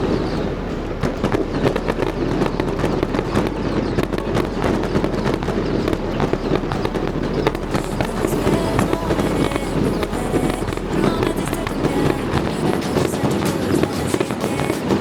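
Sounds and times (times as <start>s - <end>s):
fireworks crackling and popping: 0.0s - 15.0s.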